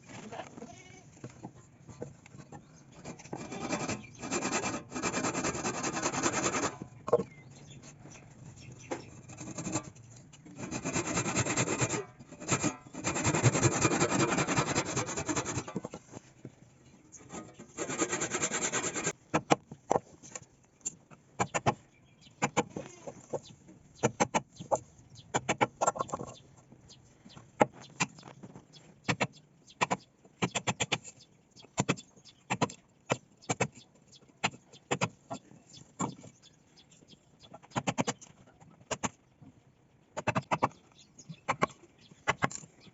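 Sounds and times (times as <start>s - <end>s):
rasping strokes on wood: 3.2s - 6.9s, 9.2s - 10.0s, 10.6s - 16.0s, 17.4s - 19.5s
sharp taps and knocks on wood: 19.3s - 20.4s, 24.0s - 26.3s.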